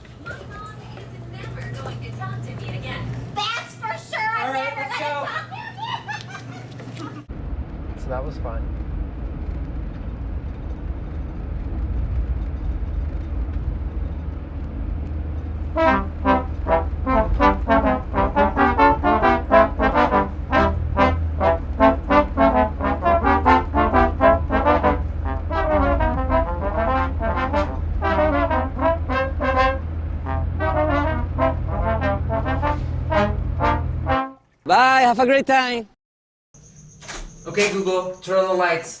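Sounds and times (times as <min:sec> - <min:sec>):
low rumble: 0:07.2 - 0:34.2
trombone playing short notes: 0:15.8 - 0:34.4.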